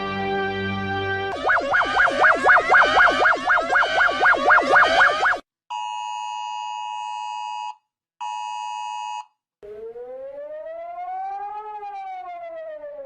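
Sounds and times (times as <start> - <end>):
siren wail: 1.3 - 5.4, 9.6 - 13.0.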